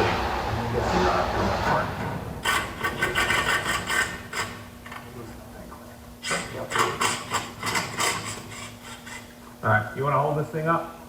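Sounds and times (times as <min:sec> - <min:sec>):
saw rasping through metal pipe: 0:02.4 - 0:04.6, 0:06.3 - 0:09.3.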